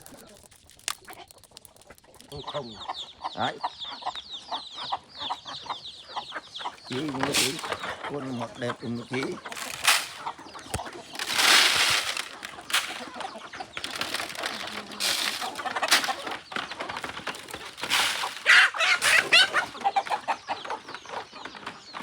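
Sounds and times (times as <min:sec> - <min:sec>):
chickens clucking: 0:00.0 - 0:22.0
rustling noise: 0:06.9 - 0:07.9, 0:09.2 - 0:19.6.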